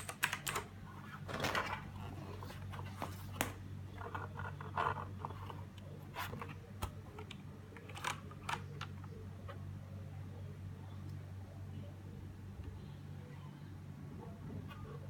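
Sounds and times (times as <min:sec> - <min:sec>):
mechanical keyboard clicks: 0:00.0 - 0:00.7
steady low hum: 0:00.0 - 0:15.0.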